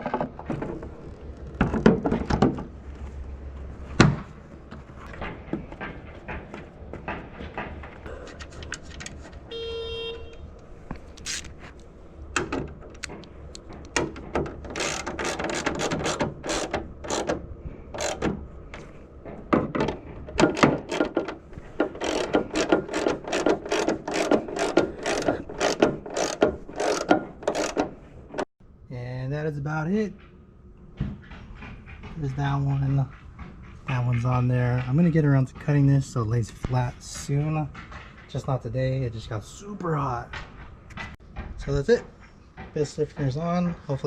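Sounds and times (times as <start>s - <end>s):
socket ratchet clicking: 14.6s - 17.4s, 18.0s - 18.3s, 20.4s - 28.0s.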